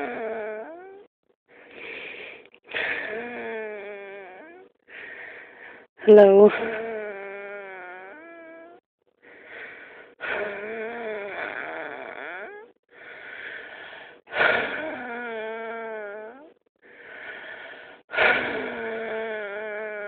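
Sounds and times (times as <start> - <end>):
person breathing with wheezing whine: 1.5 - 5.9, 9.2 - 16.1, 16.8 - 19.9.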